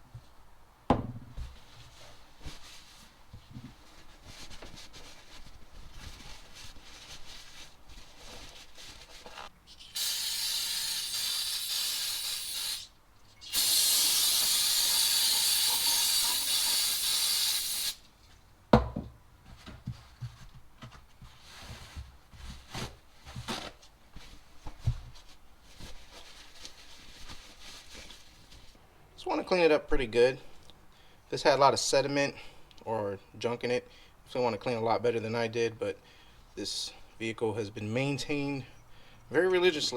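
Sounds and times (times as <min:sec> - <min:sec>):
aerosol can spraying: 0:09.8 - 0:18.0.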